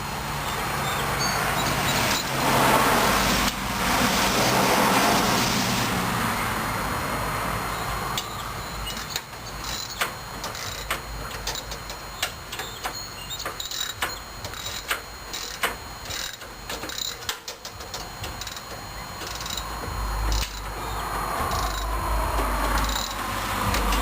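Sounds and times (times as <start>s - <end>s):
rushing noise: 0.0s - 12.5s, 18.0s - 24.0s.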